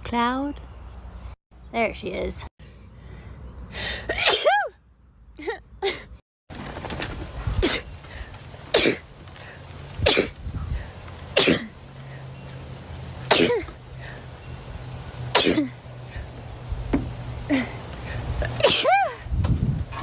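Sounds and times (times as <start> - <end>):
woman sneezing: 18.6 - 19.2.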